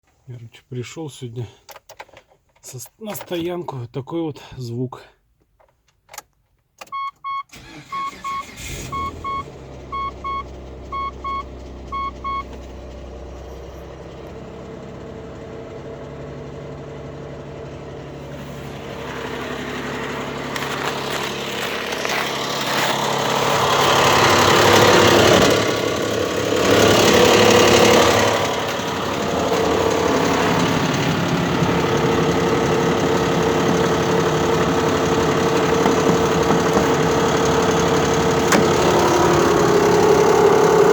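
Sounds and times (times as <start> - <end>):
car warning chime beeps: 6.8 - 12.6
car engine idling with knock: 14.0 - 40.9.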